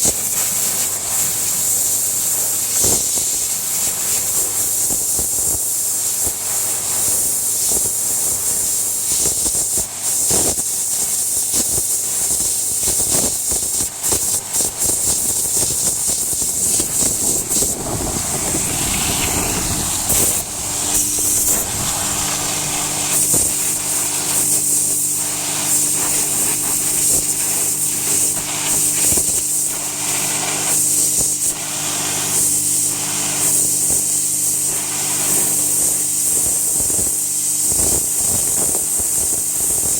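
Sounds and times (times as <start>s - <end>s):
pressure washer jet hissing on wood: 0.0s - 39.9s
machine hum: 15.8s - 27.1s.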